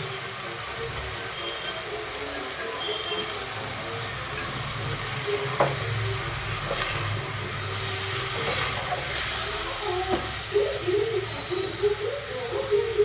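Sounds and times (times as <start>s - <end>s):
cooking hissing on stove: 0.0s - 13.0s.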